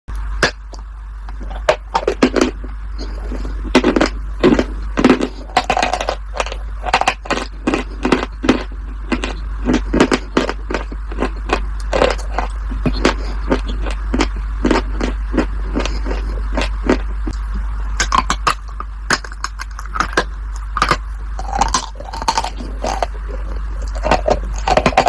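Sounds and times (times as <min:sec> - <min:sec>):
chewing crunchy food: 0:00.1 - 0:25.0
steady low hum: 0:00.1 - 0:25.0.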